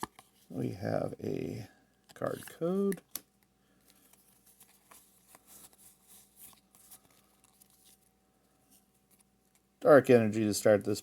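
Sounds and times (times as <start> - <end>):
trading cards rustling and clicking: 2.0 - 9.7.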